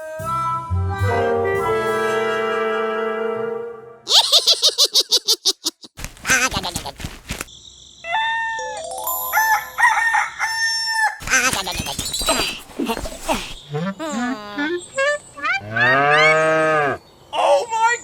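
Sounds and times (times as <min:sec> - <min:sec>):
clucking-like comic pulses: 0:04.1 - 0:07.5.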